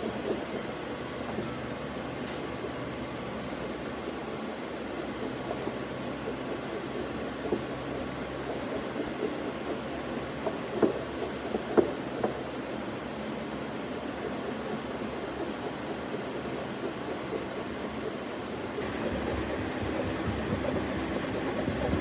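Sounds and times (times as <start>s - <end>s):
rumbling mechanical noise: 18.8s - 22.0s.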